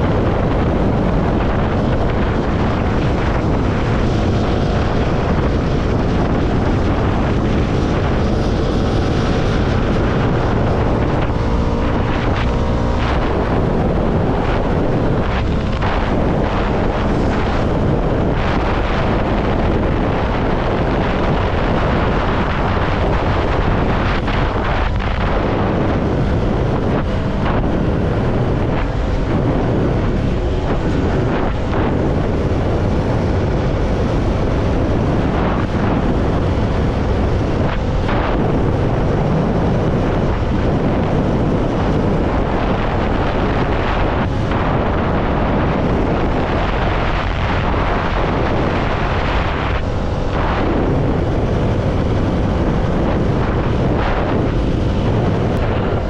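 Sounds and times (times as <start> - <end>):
motorcycle engine running: 0.0 - 56.0
wind rush on microphone: 0.0 - 56.0.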